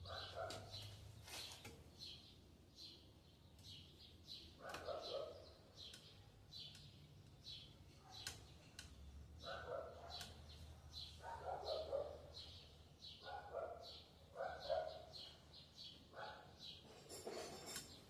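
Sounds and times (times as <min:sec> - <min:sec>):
dog barking: 0:00.0 - 0:00.8, 0:04.6 - 0:05.5, 0:08.0 - 0:08.3, 0:09.4 - 0:10.4, 0:11.2 - 0:12.4, 0:13.2 - 0:15.2, 0:16.1 - 0:16.6
bird chirping: 0:00.0 - 0:18.0.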